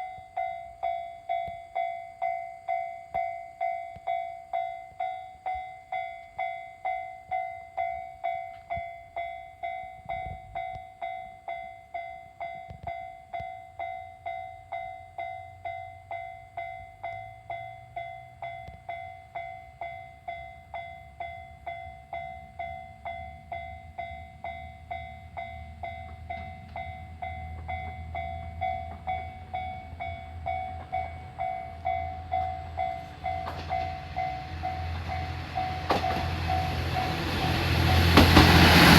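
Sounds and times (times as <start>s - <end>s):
level crossing bell ringing: 0.0s - 37.4s
diesel train rumble: 16.0s - 38.9s.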